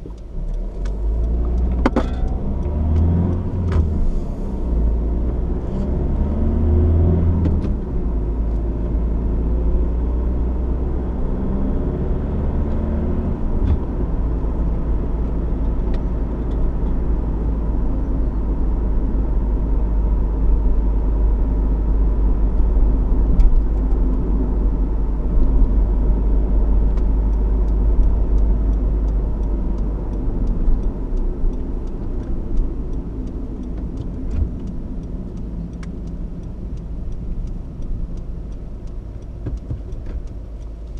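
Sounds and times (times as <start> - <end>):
diesel car engine rumble: 0.0 - 40.9
road noise: 0.0 - 40.9
faint ticking: 26.9 - 40.9.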